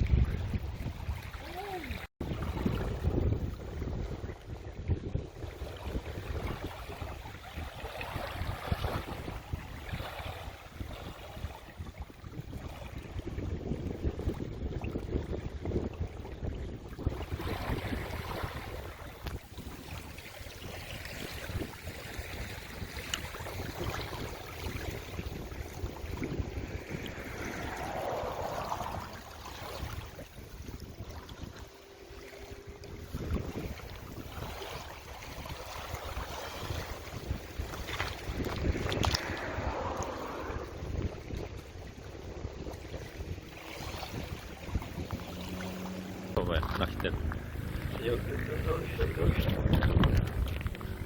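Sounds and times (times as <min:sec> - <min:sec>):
seawater washing: 0:00.0 - 0:03.5, 0:05.5 - 0:51.0
wind buffeting microphone: 0:00.0 - 0:51.0.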